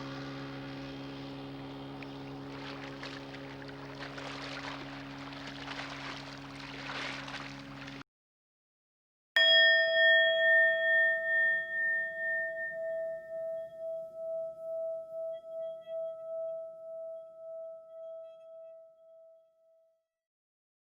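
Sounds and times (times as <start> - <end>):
bell ringing: 9.4 - 13.5.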